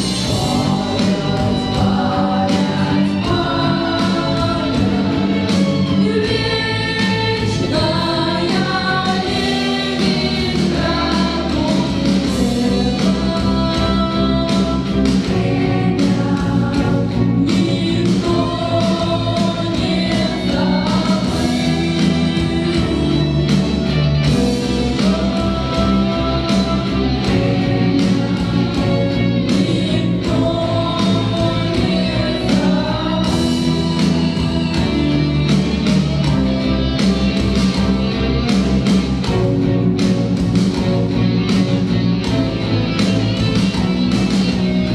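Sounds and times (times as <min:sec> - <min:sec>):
choir singing: 0:00.0 - 0:23.3, 0:24.3 - 0:35.8
instrumental accompaniment with beat: 0:00.0 - 0:44.9.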